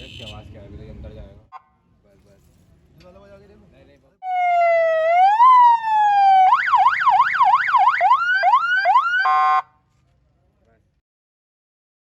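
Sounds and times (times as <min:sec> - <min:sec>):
police siren wailing and yelping: 0:04.2 - 0:09.6.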